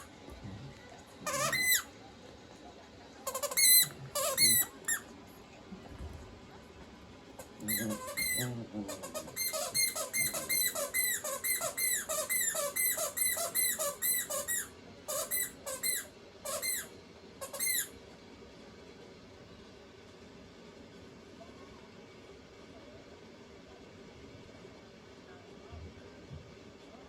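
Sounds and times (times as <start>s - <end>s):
squeaky ball squeaking: 1.2s - 1.9s, 3.2s - 5.0s, 7.6s - 17.9s.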